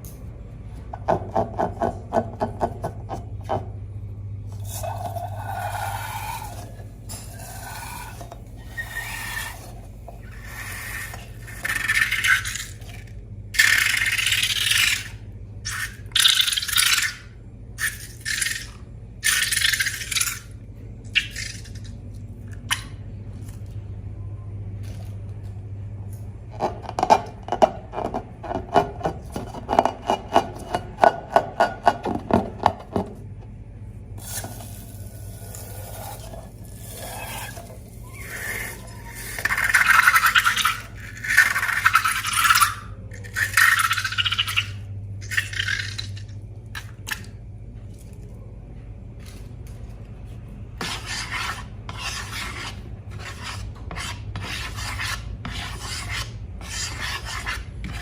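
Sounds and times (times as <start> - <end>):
steady low hum: 0.0 - 58.0
slime scraping and rasping: 4.6 - 20.5, 34.2 - 46.2, 50.8 - 58.0.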